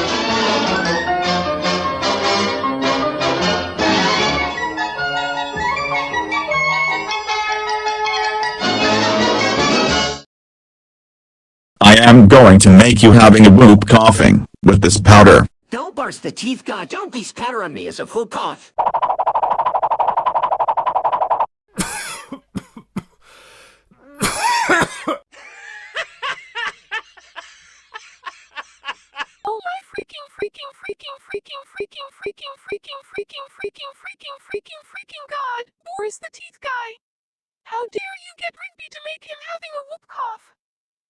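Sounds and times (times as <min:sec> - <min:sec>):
harsh coughs: 0:21.8 - 0:23.2, 0:24.0 - 0:25.3
hissing breath: 0:23.2 - 0:23.9.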